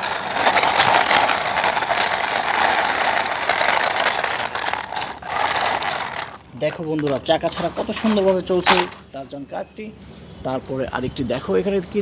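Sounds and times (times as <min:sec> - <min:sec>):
toy car gear ratcheting whirr: 0:00.0 - 0:06.5.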